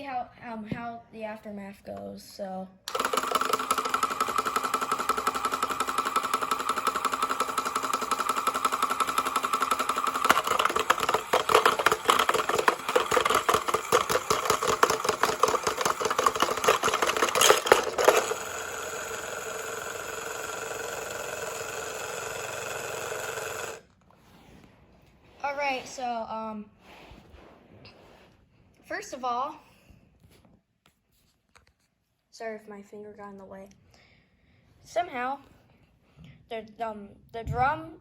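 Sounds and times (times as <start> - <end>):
small electric motor whine: 2.9 - 23.9.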